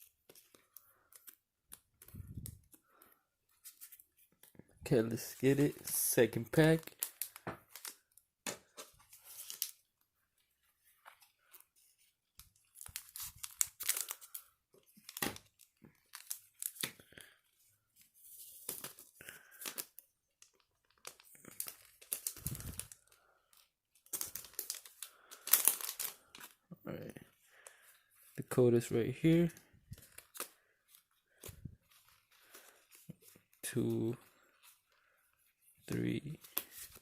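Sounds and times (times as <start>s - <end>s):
foil wrapper torn and crinkled: 12.7s - 17.1s, 18.7s - 23.3s, 24.1s - 26.4s.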